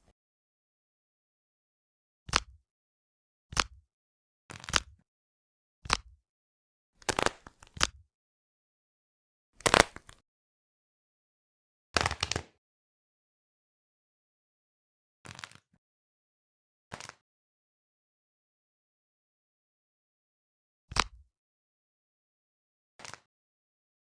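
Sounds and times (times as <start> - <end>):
crunchy squishing of stress toys: 9.6 - 10.2.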